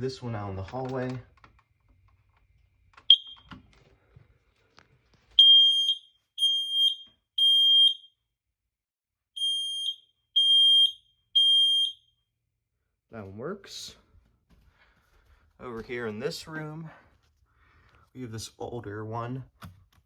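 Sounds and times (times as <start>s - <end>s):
smoke alarm beeping: 3.1s - 3.5s, 5.4s - 8.2s, 9.4s - 12.1s.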